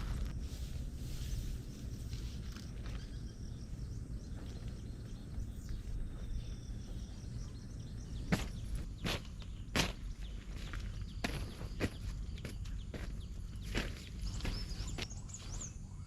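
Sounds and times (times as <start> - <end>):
faint high chirping calls: 0.0 - 16.0.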